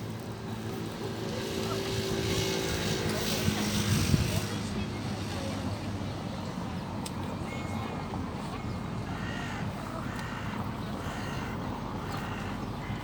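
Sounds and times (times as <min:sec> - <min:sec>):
crow cawing: 0:09.1 - 0:13.0.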